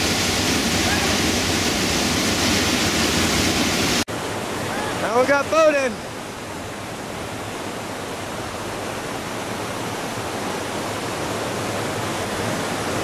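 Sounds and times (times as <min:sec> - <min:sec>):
rushing water roar: 0:00.0 - 0:13.0.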